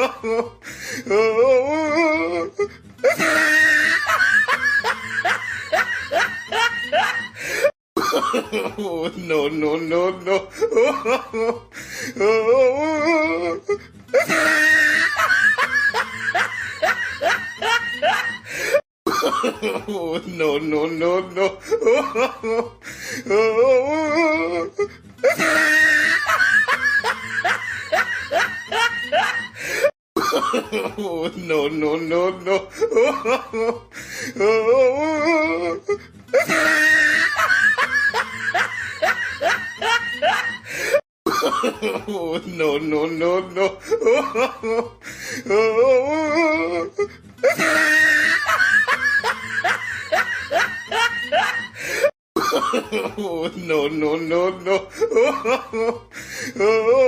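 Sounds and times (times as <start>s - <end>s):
evil cackling laugh: 0.0s - 0.6s, 2.3s - 9.1s, 10.7s - 11.7s, 13.4s - 20.2s, 24.0s - 31.2s, 32.8s - 33.9s, 35.2s - 42.2s, 46.1s - 53.3s, 55.0s - 56.1s.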